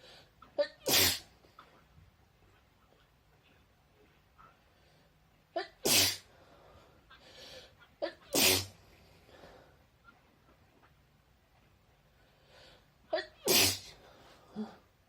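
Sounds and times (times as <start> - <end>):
person sneezing: 0.7 - 1.4, 5.6 - 6.3, 8.1 - 8.8, 13.2 - 14.1.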